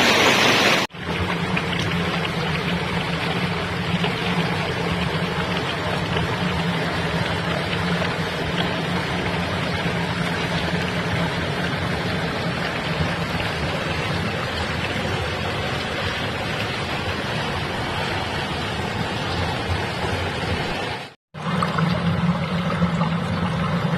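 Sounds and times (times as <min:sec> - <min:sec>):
rushing water: 0:00.0 - 0:23.9
low hum: 0:21.4 - 0:23.9.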